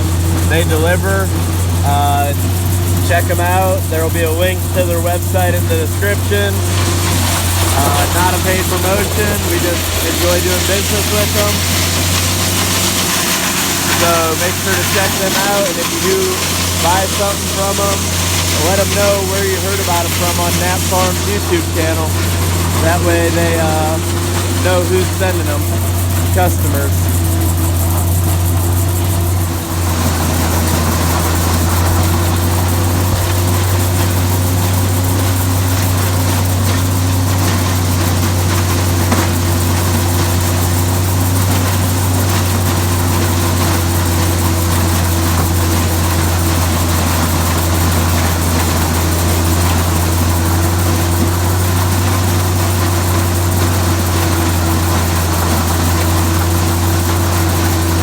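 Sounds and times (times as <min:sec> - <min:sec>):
grinder mixer grinding corn: 0:00.0 - 0:58.0
tractor engine running: 0:00.0 - 0:58.0.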